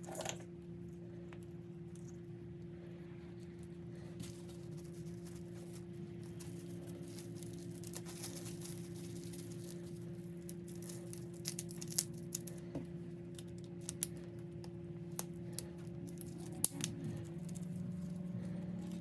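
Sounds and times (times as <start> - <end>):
steady low hum: 0.0 - 19.0
plastic cling wrap crinkling: 4.2 - 12.6.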